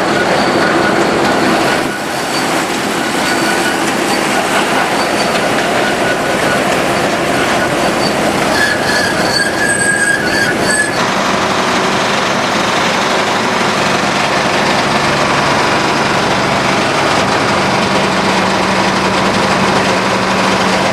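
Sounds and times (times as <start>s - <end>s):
metal-on-metal squeal: 0.0s - 11.0s
grinder machine din: 0.0s - 20.9s.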